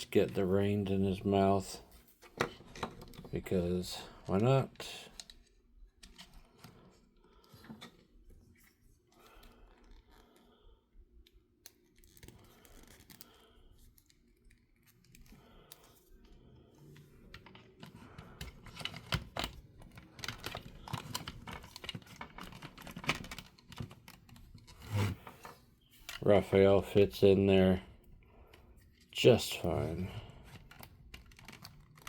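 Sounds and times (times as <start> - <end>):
faint rubbing of plastic toys: 11.9 - 32.0
small clicks and taps of toy parts: 30.5 - 32.0.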